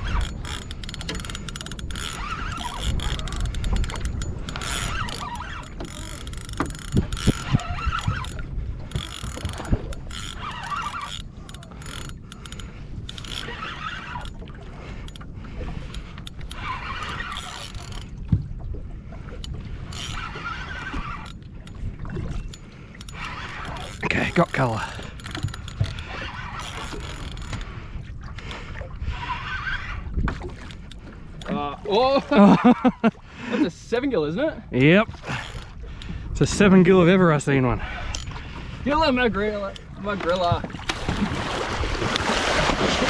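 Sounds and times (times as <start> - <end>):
fishing reel cranking: 0.0 - 14.4, 15.0 - 18.1, 19.8 - 27.8, 35.3 - 35.8.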